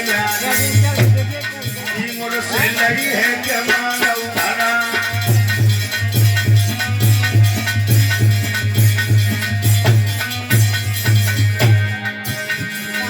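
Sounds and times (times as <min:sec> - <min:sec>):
instrumental folk music: 0:00.0 - 0:13.0
rattling jingling percussion: 0:00.0 - 0:13.0
steady drum beat: 0:00.0 - 0:13.0.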